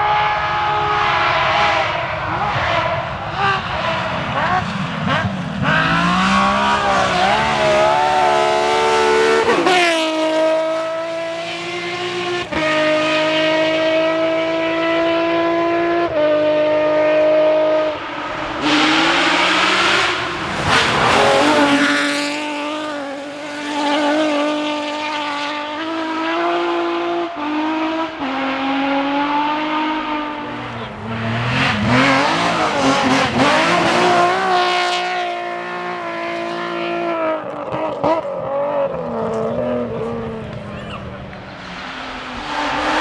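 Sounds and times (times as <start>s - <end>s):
rally car engine at full throttle: 0.0s - 43.0s
loud rush of noise: 17.8s - 24.6s, 38.9s - 43.0s.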